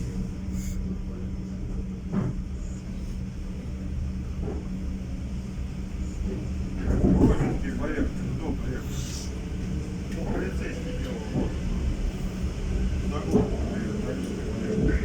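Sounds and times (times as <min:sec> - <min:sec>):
train rumbling on track: 0:00.0 - 0:15.0.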